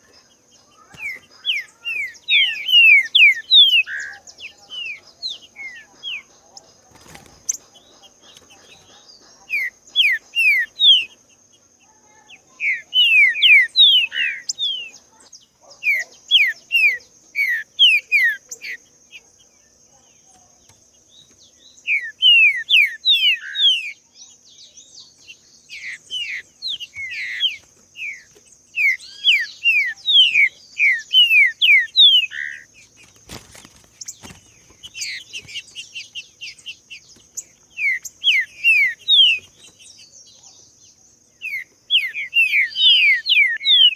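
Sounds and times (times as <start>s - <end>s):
bird singing whistled notes: 0.0s - 6.6s, 34.8s - 43.9s.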